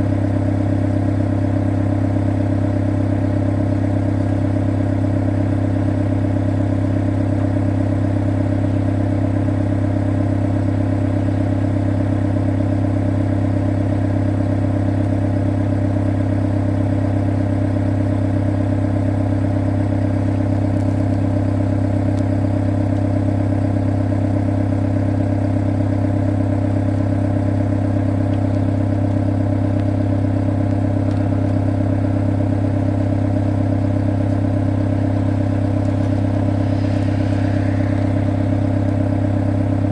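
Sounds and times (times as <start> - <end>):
excavator diesel engine droning: 31.0 - 39.9.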